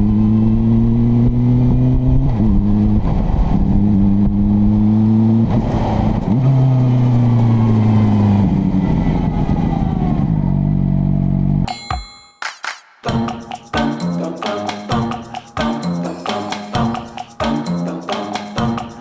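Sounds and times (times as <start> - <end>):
chiming music: 11.7 - 19.0.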